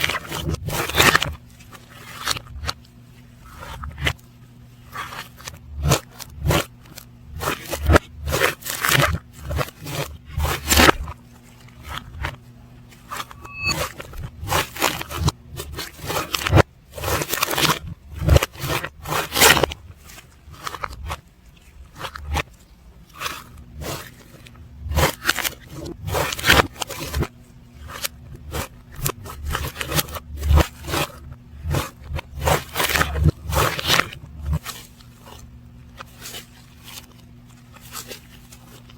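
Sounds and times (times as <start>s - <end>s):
slime crackling and squishing: 15.9s - 38.9s.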